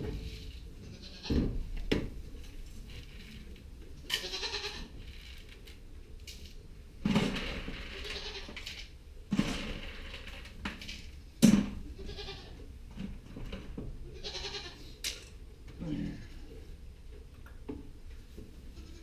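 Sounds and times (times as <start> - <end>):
goats bleating: 4.1 - 4.9, 12.0 - 12.6, 14.2 - 14.8.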